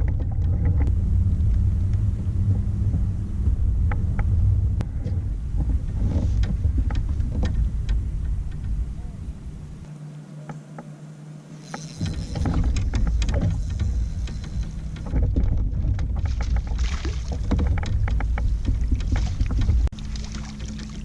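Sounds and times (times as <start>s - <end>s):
wind buffeting microphone: 0.0s - 9.9s
water splashing against kayak hull: 11.7s - 21.0s.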